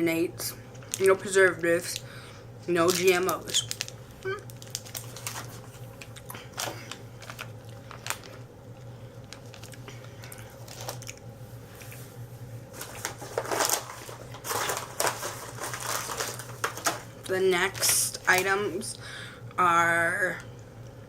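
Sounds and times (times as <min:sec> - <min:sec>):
wrappers crinkling: 0:00.8 - 0:02.0, 0:02.8 - 0:08.4, 0:09.2 - 0:11.2, 0:12.7 - 0:18.8.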